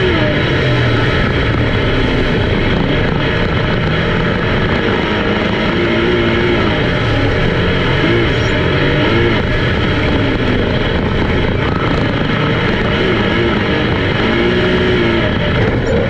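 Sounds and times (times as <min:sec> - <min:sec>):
race car engines revving: 0:00.0 - 0:16.0.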